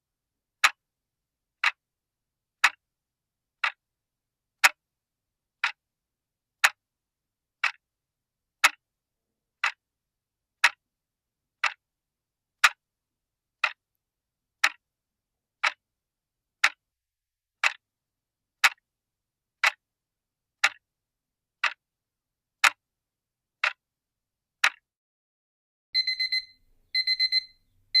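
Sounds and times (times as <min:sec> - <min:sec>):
clock ticking: 0:00.6 - 0:00.8, 0:01.6 - 0:01.8, 0:02.6 - 0:02.8, 0:03.6 - 0:03.8, 0:04.6 - 0:04.8, 0:05.6 - 0:05.8, 0:06.6 - 0:06.8, 0:07.6 - 0:07.8, 0:08.6 - 0:08.8, 0:09.6 - 0:09.8, 0:10.6 - 0:10.8, 0:11.6 - 0:11.8, 0:12.6 - 0:12.8, 0:13.6 - 0:13.8, 0:14.6 - 0:14.8, 0:15.6 - 0:15.8, 0:16.6 - 0:16.8, 0:17.6 - 0:17.8, 0:18.6 - 0:18.8, 0:19.6 - 0:19.8, 0:20.6 - 0:20.8, 0:21.6 - 0:21.8, 0:24.6 - 0:24.8, 0:26.0 - 0:28.0
digital alarm beeping: 0:26.0 - 0:28.0.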